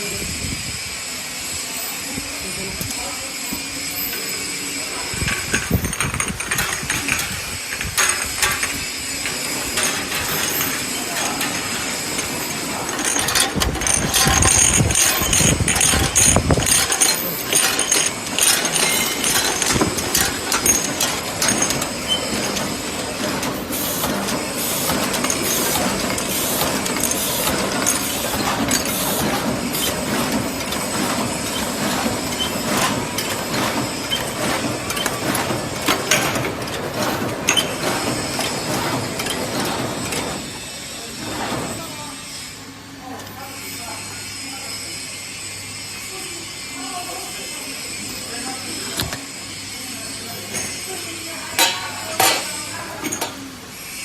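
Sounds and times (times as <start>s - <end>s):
machine clattering: 4.8s - 41.8s, 50.5s - 53.4s.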